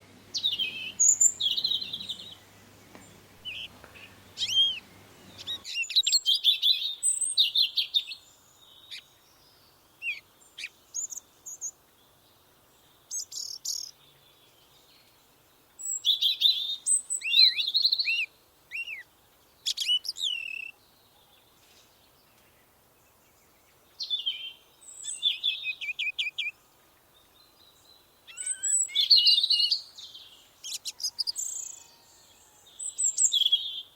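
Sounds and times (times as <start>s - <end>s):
songbirds chirping and trilling: 0.0s - 33.9s.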